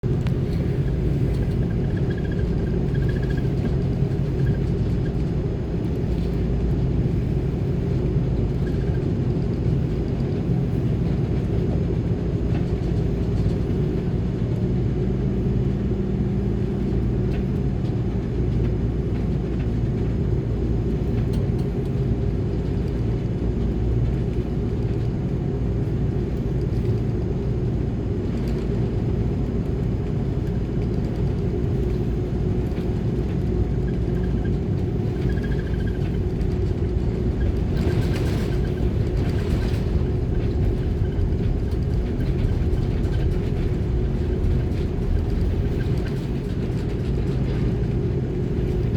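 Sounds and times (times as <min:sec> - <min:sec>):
steady hums: 0:00.0 - 0:14.0, 0:26.8 - 0:48.9
airliner cabin rumble: 0:00.0 - 0:48.9.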